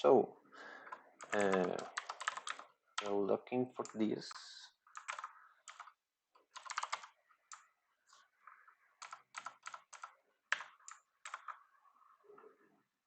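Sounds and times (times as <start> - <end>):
keyboard typing: 0.8 - 3.2, 4.8 - 11.8.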